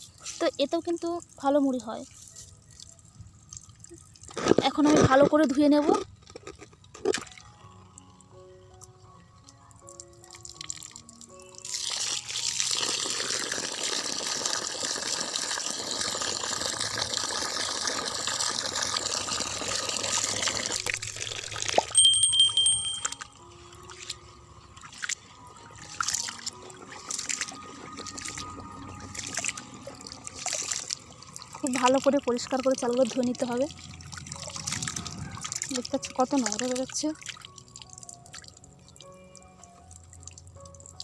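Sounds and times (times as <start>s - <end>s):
soft background music: 0.0s - 41.0s
water pouring onto rice: 11.7s - 22.0s
hand washing rice splashes: 25.8s - 32.0s.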